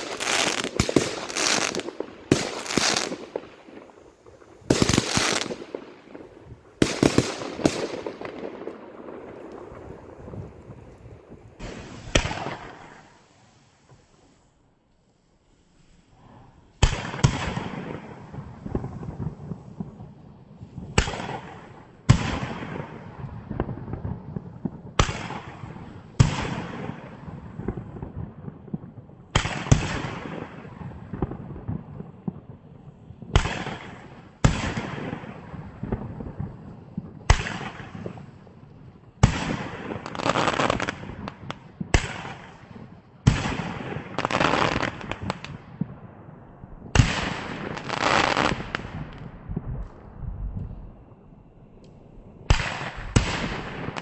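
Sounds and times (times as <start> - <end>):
fireworks bangs: 0.0 - 13.1, 33.4 - 50.8
fireworks crackle: 0.0 - 14.6, 33.2 - 54.0.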